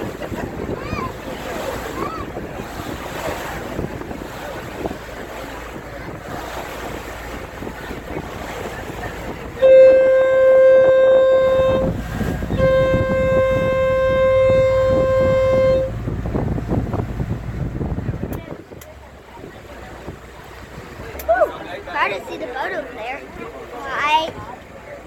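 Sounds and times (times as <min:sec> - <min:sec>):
wind on microphone: 0:00.0 - 0:21.4
water washing: 0:00.0 - 0:25.0
ferry horn blasts: 0:09.2 - 0:17.8.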